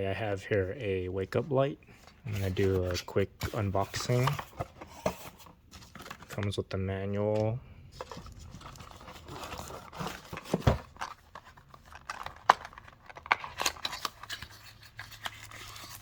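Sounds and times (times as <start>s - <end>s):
packaging rustling and scraping: 2.0s - 6.6s, 7.3s - 16.0s.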